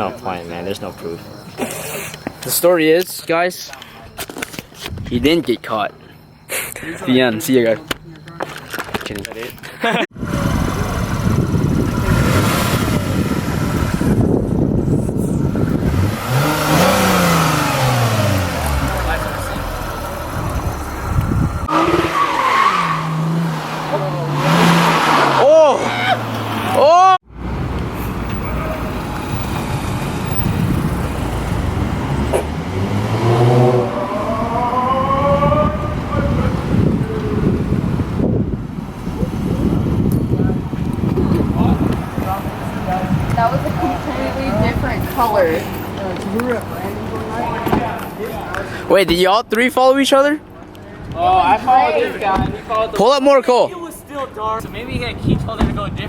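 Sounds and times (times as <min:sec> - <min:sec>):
car engine rumbling and revving: 0:10.2 - 0:48.0.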